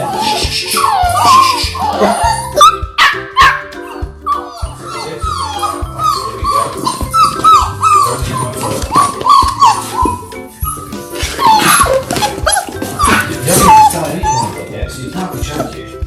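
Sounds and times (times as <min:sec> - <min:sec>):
puppies whining and yipping: 0:00.0 - 0:15.7
background music: 0:00.0 - 0:16.0.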